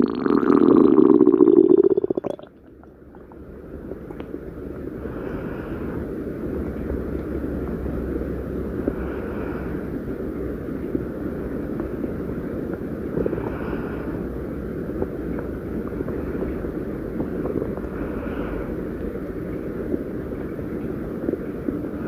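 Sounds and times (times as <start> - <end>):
stomach growling: 0.0 - 4.3.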